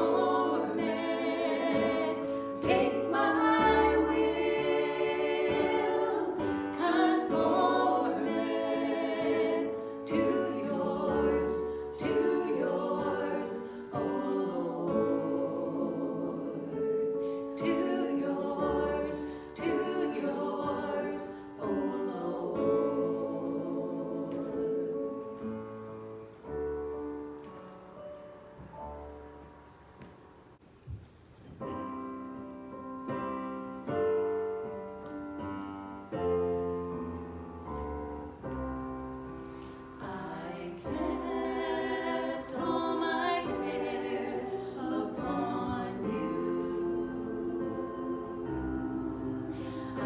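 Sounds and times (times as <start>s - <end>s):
voices singing hymn-like song: 0.0s - 26.3s, 39.4s - 50.0s.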